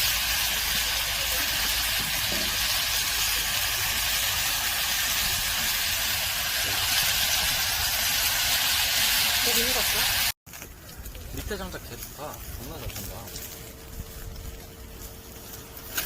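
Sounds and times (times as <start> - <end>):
meat sizzling on a grill: 0.0 - 10.4.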